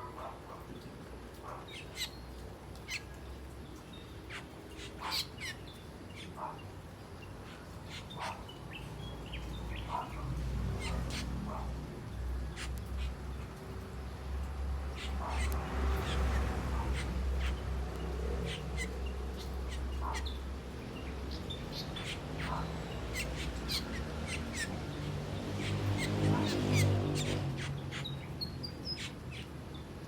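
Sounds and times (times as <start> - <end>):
starlings chirping: 1.5 - 30.0.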